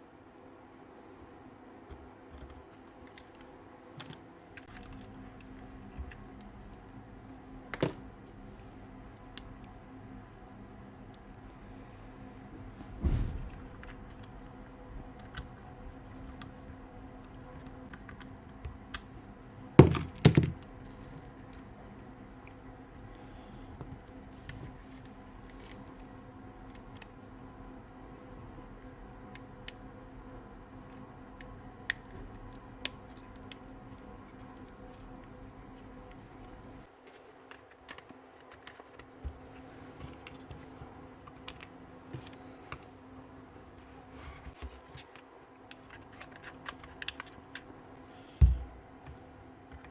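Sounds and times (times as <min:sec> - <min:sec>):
faint steady hum: 0:00.0 - 0:49.9
loud knocks: 0:12.9 - 0:14.1.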